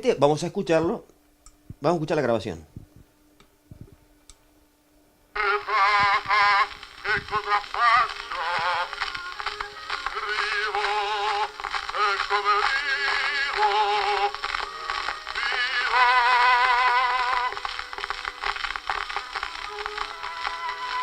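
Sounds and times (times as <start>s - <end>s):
tinny phonograph singing with vibrato: 5.4s - 21.0s.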